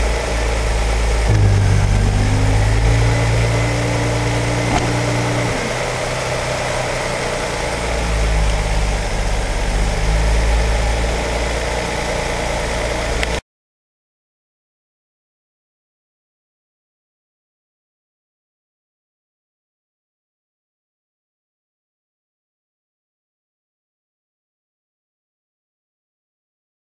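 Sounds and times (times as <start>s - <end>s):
car engine idling: 0.0s - 13.4s
steady hum: 0.7s - 11.3s.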